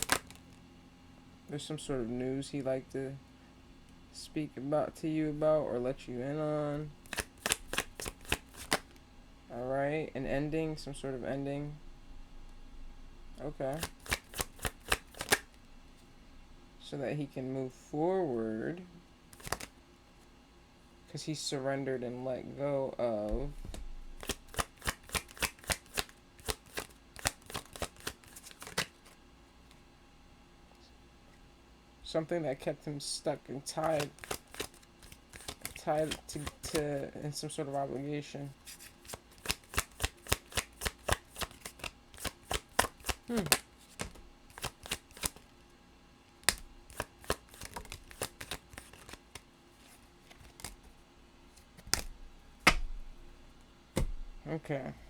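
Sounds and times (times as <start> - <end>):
card snaps and taps: 0.0 - 0.4, 13.8 - 15.6, 19.3 - 19.7, 46.4 - 49.4, 51.7 - 52.9
cards being shuffled: 0.0 - 0.6, 7.0 - 9.0, 13.7 - 15.6, 19.3 - 19.7, 23.3 - 29.2, 33.7 - 37.1, 38.6 - 45.5, 46.4 - 52.9.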